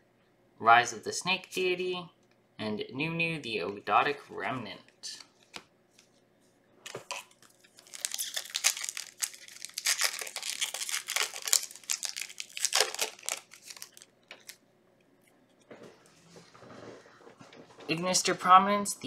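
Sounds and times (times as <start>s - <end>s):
foil wrapper tearing and crinkling: 6.9s - 14.6s.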